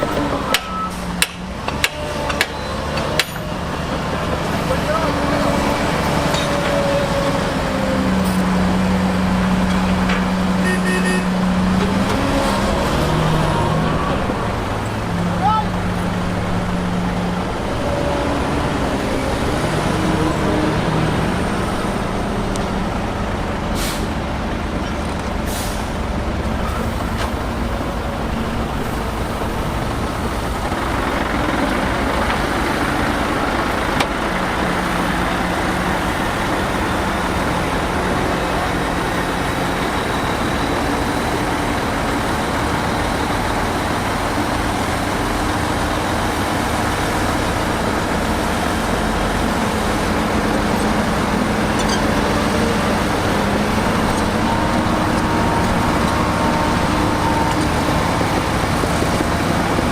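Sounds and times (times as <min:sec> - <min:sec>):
diesel machinery running: 0:00.0 - 0:59.9
short sharp hisses: 0:23.8 - 0:24.1.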